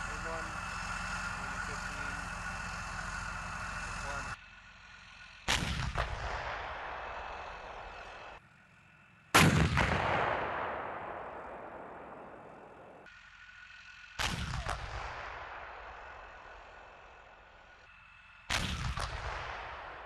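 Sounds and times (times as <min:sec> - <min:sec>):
rolling echo: 0:05.2 - 0:13.1
tank gun blasts: 0:05.4 - 0:08.1, 0:09.4 - 0:13.1, 0:14.2 - 0:16.0, 0:18.5 - 0:20.0.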